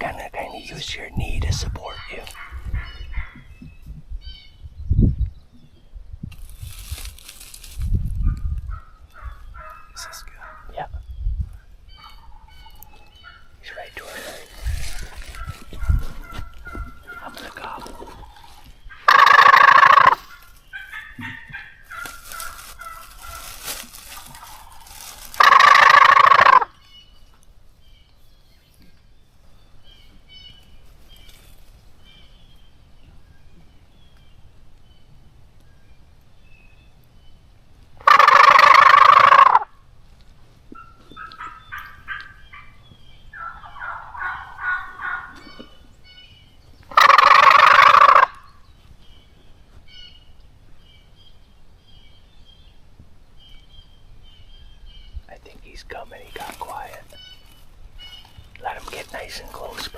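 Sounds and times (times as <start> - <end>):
wild turkey gobbling: 8.7 - 10.8, 12.0 - 27.0, 38.0 - 39.7, 40.7 - 46.2, 46.9 - 48.6, 55.8 - 59.9
turkey gobbler call: 15.1 - 23.6, 24.2 - 27.0, 38.0 - 39.7, 40.8 - 46.2, 46.9 - 48.6.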